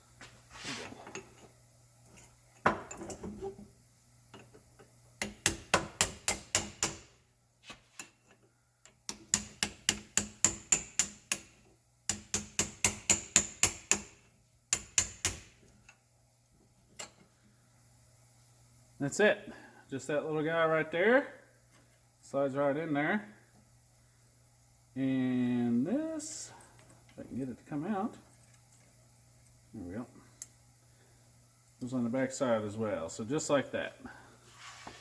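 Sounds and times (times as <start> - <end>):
hammer tapping on steel: 9.1 - 14.1.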